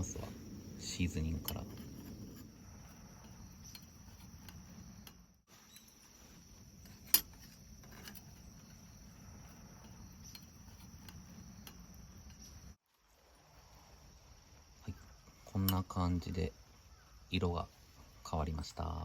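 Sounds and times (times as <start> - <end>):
crickets chirping: 0.0 - 19.0.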